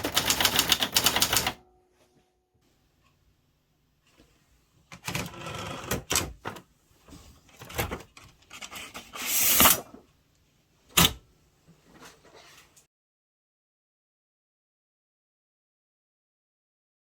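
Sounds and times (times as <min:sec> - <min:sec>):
typewriter clacks: 0:00.0 - 0:01.6.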